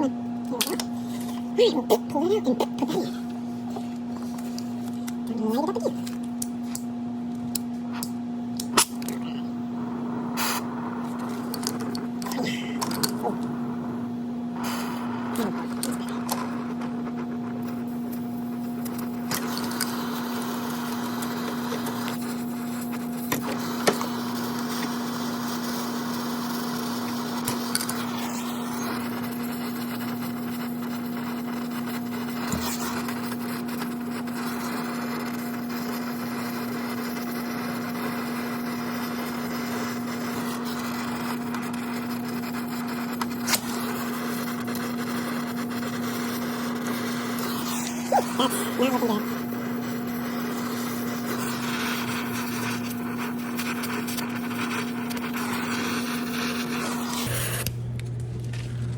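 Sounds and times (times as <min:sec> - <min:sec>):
low hum: 0:00.0 - 0:21.2, 0:56.8 - 0:58.9
torch flame hissing: 0:07.9 - 0:58.9.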